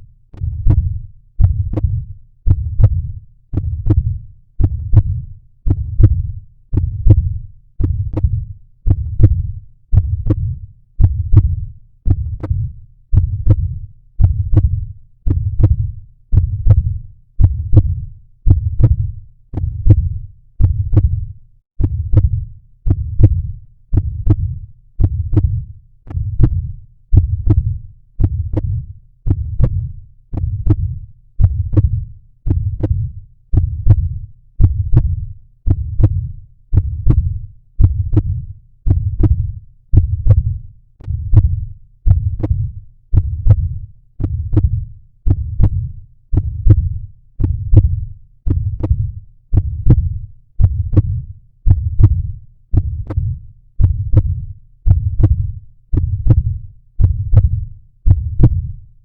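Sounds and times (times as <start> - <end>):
deep low heartbeat: 0.0 - 59.0.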